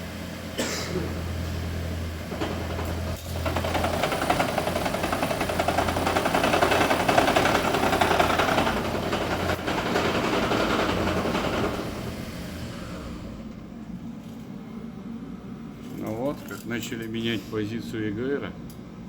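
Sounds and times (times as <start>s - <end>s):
car engine knocking rattle: 2.4s - 12.2s.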